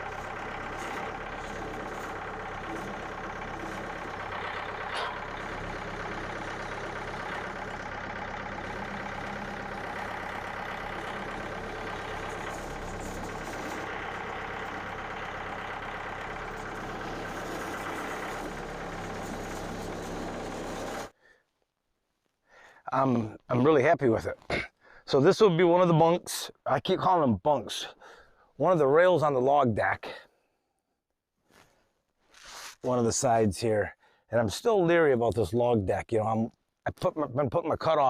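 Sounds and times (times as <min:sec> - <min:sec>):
small gasoline engine running: 0:00.0 - 0:21.2.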